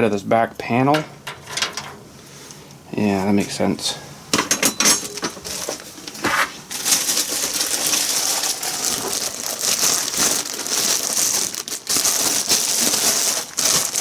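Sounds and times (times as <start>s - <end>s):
plastic bag crinkling: 5.0s - 14.0s.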